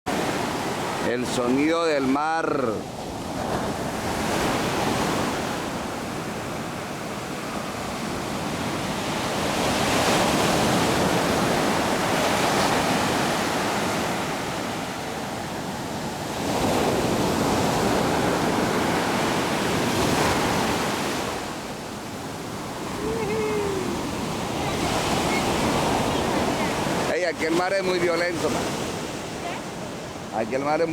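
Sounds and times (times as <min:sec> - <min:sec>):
waves breaking on shore: 0:00.1 - 0:30.9.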